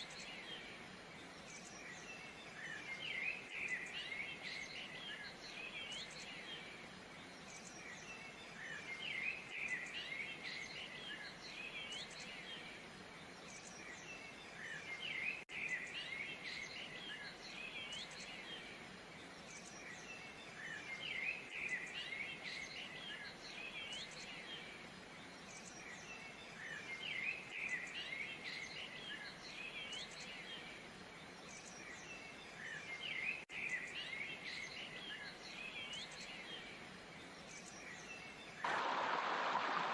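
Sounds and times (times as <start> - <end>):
faint hiss: 0.0 - 39.9
small birds chirping and twittering: 0.0 - 39.9.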